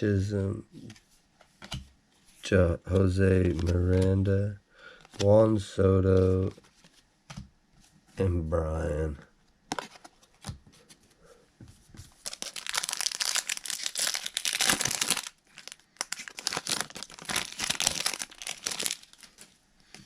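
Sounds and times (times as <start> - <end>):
card pack wrapper tearing: 12.2 - 19.5.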